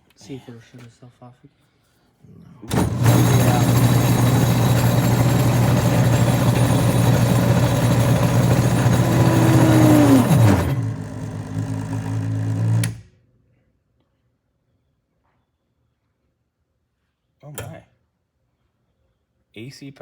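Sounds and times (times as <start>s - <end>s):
electric motor whining down: 2.7s - 13.0s.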